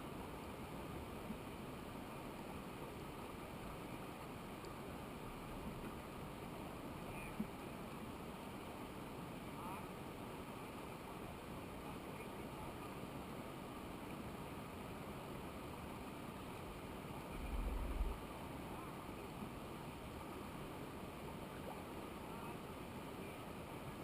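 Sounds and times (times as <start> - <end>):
flowing water rushing: 0.0 - 24.0
brief low rumble: 17.3 - 18.2.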